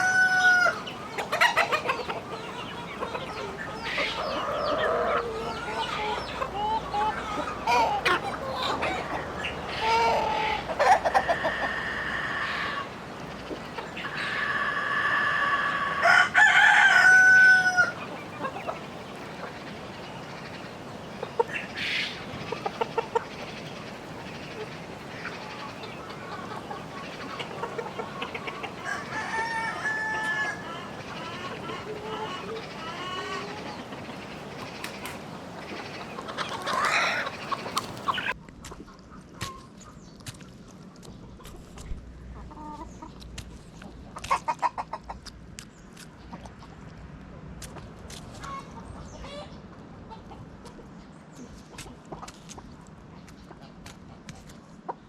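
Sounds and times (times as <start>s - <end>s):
rooster crowing: 0.0s - 0.8s, 14.2s - 18.0s, 28.8s - 30.7s
chickens clucking: 0.0s - 55.0s.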